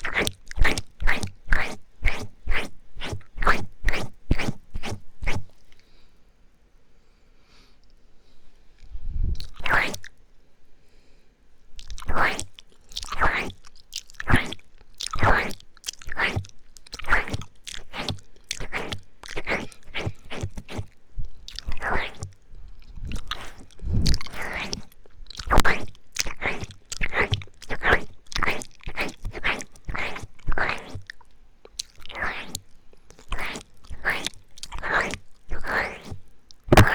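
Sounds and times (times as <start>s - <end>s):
wet mouth smacking and licking: 0.0s - 5.8s, 9.4s - 10.1s, 11.8s - 36.9s.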